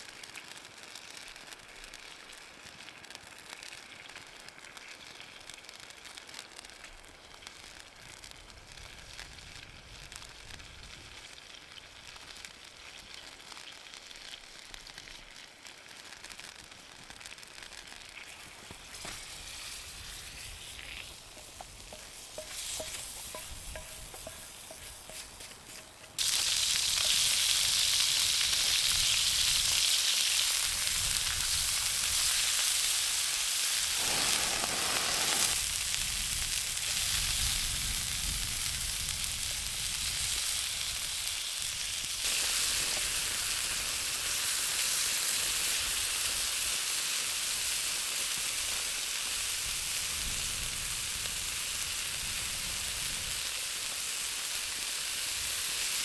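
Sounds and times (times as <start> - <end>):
food sizzling in a frying pan: 0.0 - 56.0.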